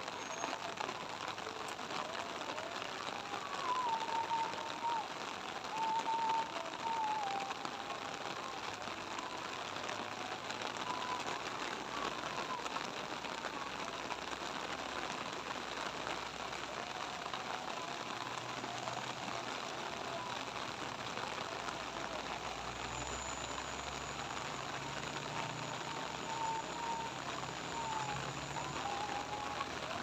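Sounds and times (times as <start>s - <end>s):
rain pattering: 0.0s - 30.0s
faint wavering voice: 23.2s - 30.0s.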